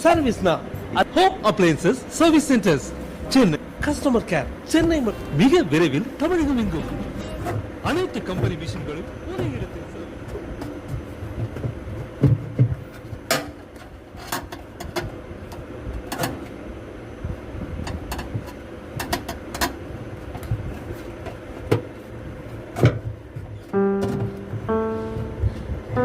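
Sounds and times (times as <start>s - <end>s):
background hum: 0.0s - 26.0s
sharp knocks and clicks: 22.8s - 25.6s.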